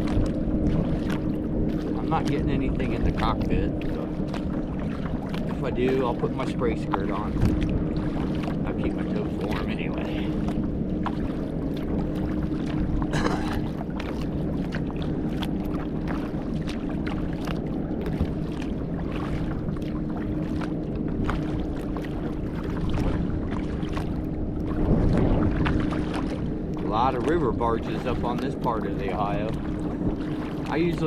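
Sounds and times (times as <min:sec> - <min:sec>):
steady low rumble: 0:00.0 - 0:31.0
water splashing against kayak: 0:00.0 - 0:31.0.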